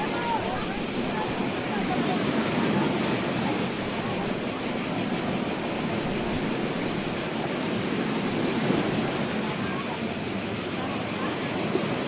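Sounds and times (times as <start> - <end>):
insects trilling: 0.0 - 12.0
ocean surf on beach: 0.0 - 12.0.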